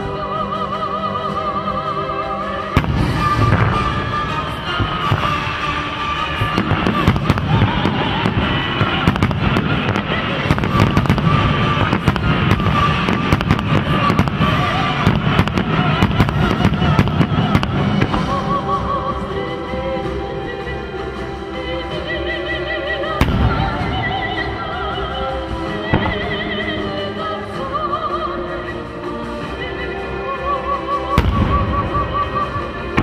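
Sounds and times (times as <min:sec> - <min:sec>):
music playing: 0:00.0 - 0:33.0
fireworks bangs and crackling: 0:02.7 - 0:20.2, 0:23.2 - 0:27.0, 0:31.2 - 0:33.0.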